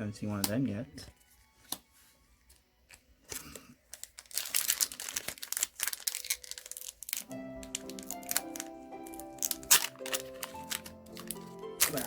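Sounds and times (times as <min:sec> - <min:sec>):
foil pack crinkling and tearing: 0:03.3 - 0:12.0.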